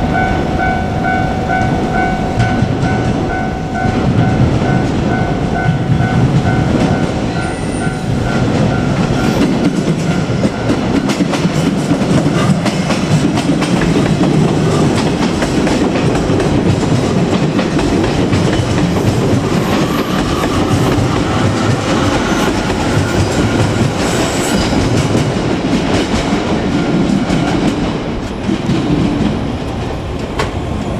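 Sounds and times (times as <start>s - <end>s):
crossing warning bell ringing: 0.0s - 25.4s
train wheels clacking over rails: 0.0s - 30.9s.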